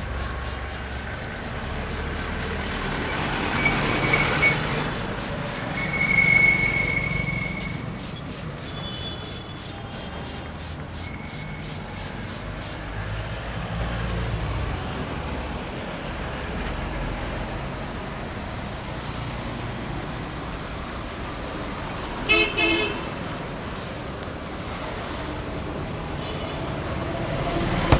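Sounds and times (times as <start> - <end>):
street traffic rumble: 0.0 - 27.9
vehicle horn honking: 8.6 - 9.8, 22.3 - 23.2.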